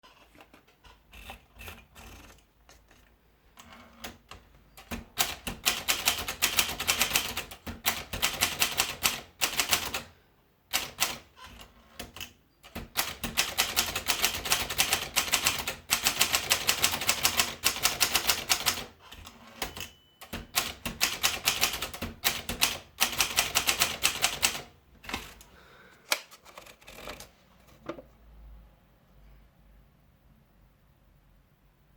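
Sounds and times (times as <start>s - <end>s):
typewriter key strikes: 10.8s - 25.4s.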